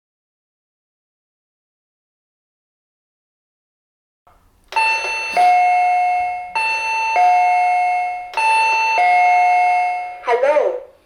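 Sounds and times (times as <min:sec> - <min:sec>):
electronic two-tone chime: 0:04.8 - 0:10.2.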